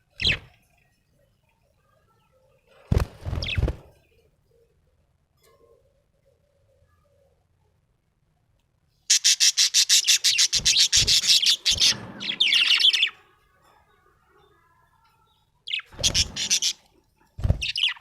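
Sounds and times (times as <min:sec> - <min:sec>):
budgerigar chirping: 0:09.1 - 0:12.0.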